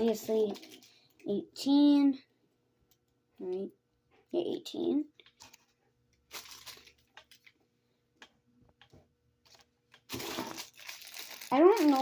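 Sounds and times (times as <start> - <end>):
fidget toys rustling and clicking: 0.0 - 1.3, 9.4 - 12.0
plastic packaging crinkling: 6.3 - 7.6, 9.5 - 12.0.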